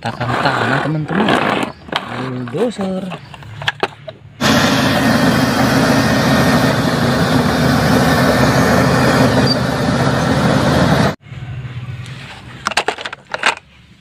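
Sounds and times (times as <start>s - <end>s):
bulldozer diesel engine rumbling: 0.0s - 13.4s.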